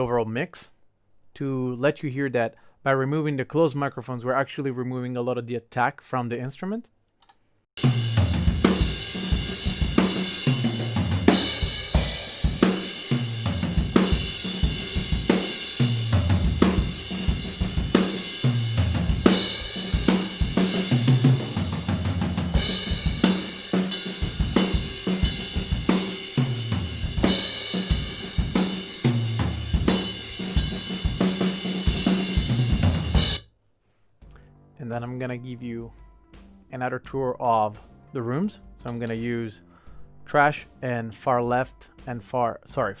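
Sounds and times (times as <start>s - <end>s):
steady cymbals: 7.8s - 33.4s
drum kit groove with tom fills: 7.8s - 33.5s, 35.9s - 40.7s.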